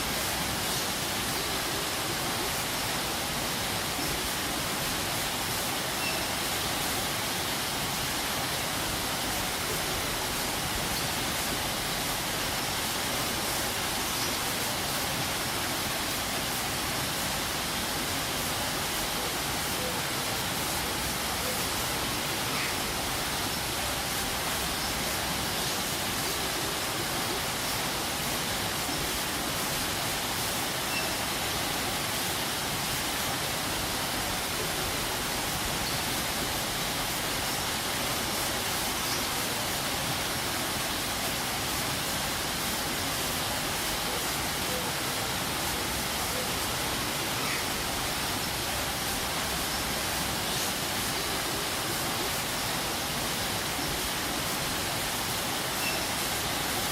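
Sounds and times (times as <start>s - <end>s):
waterfall rushing: 0.0s - 56.9s.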